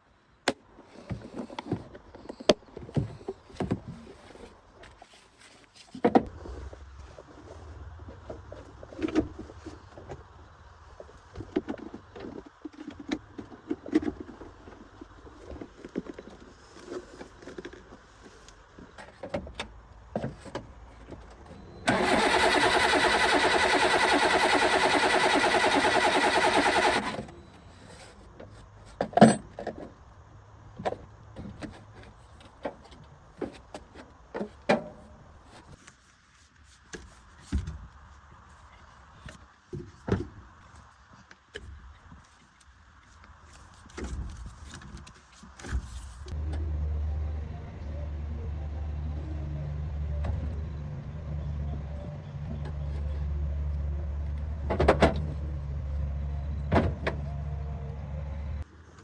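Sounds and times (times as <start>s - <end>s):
loud motor whir: 21.8s - 27.3s.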